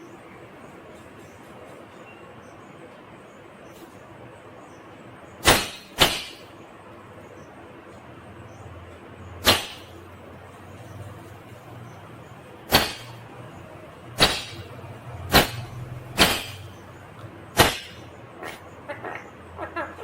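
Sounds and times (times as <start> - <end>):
sharp loud clicks: 5.4 - 6.5, 9.4 - 9.9, 12.7 - 13.2, 14.2 - 14.7, 15.3 - 16.8, 17.6 - 18.1.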